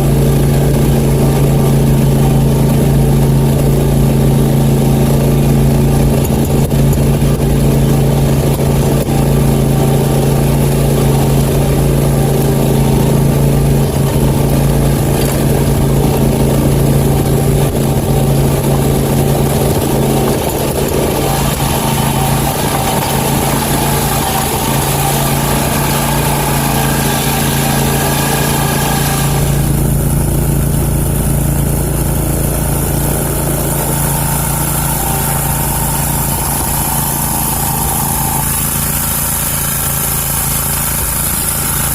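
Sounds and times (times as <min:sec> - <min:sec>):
lawnmower engine running: 0:00.0 - 0:41.9.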